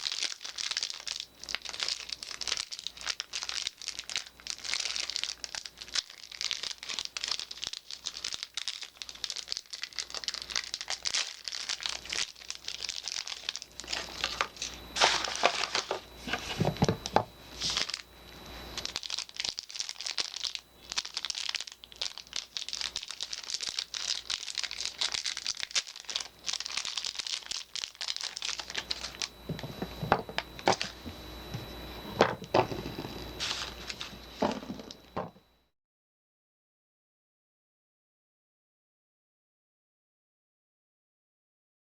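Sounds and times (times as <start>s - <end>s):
wrapping crinkling and tearing: 0.0s - 18.1s, 18.8s - 31.0s, 32.8s - 35.2s.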